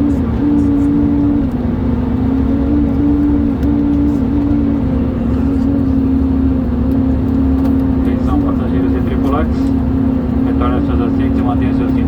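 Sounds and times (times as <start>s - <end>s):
airplane cabin rush: 0.0s - 12.0s
droning hum shifting pitch: 0.0s - 12.0s.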